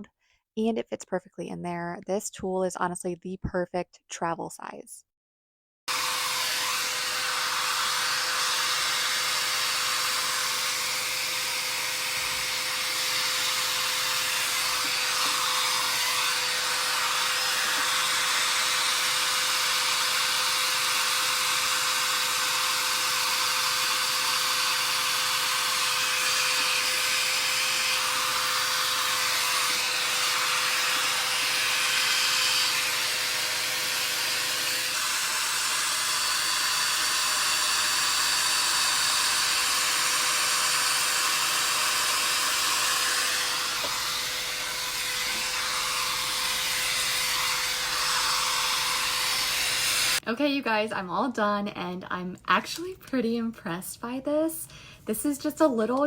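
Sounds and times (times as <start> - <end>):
hot air brush blowing: 5.9 - 50.2.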